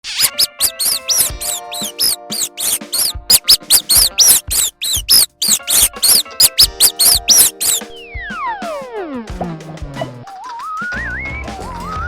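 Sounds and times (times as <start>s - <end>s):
cartoon mouse squeaks: 0.0s - 7.9s.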